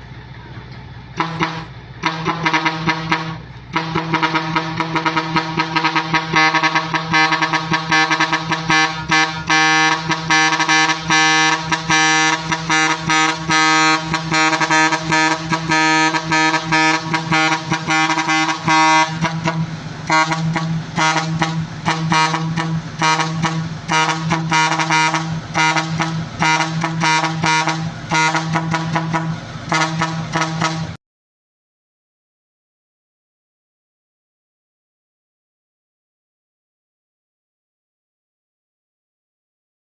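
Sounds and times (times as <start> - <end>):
held low horn tone: 1.1 - 31.0
air horns playing short notes: 1.2 - 31.0.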